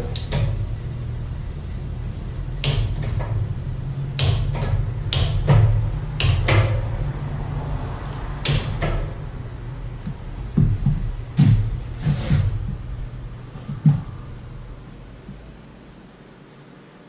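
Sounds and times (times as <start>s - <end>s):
sharp clicks and knocks: 0.0s - 0.6s, 2.6s - 3.5s, 4.1s - 7.1s, 8.4s - 9.2s
steady low hum: 0.0s - 17.0s.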